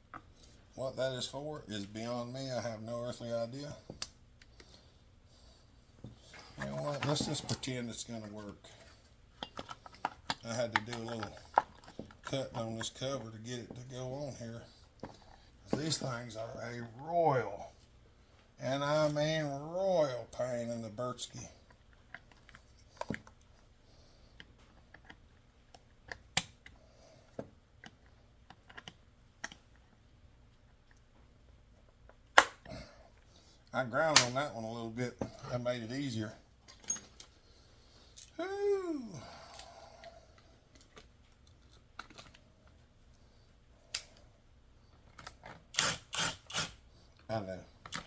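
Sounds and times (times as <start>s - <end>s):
plastic parts clicking and knocking: 9.4s - 12.9s, 24.4s - 29.8s, 40.7s - 42.8s
small parts clicking and tapping: 39.5s - 42.8s.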